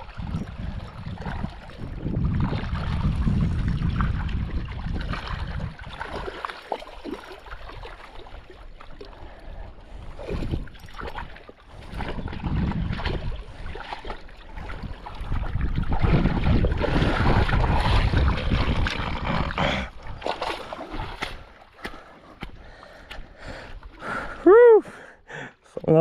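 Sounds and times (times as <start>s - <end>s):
wind buffeting microphone: 0.0s - 6.4s, 9.3s - 21.5s.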